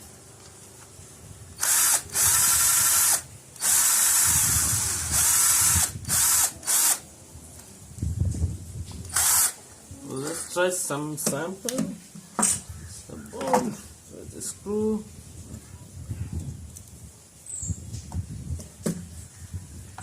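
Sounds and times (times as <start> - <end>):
power drill whining: 1.6 - 7.0, 9.1 - 9.6.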